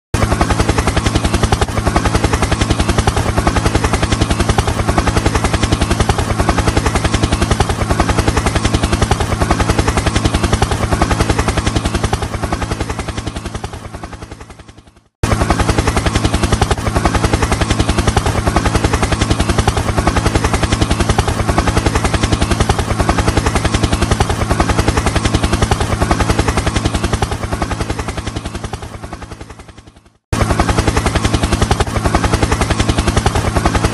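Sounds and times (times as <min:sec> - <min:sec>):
helicopter rotor blades chopping: 0:00.1 - 0:33.9.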